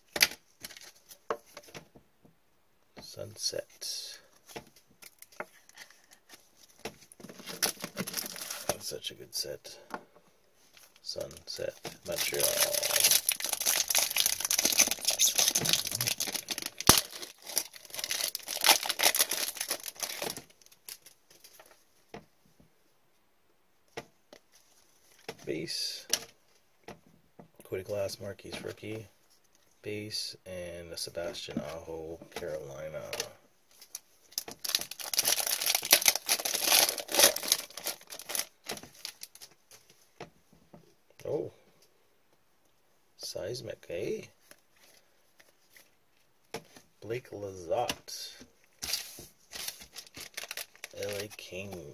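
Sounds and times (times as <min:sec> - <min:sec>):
wrapper crinkling and tearing: 0:05.0 - 0:08.8, 0:10.8 - 0:21.8, 0:33.0 - 0:39.6, 0:48.8 - 0:51.9.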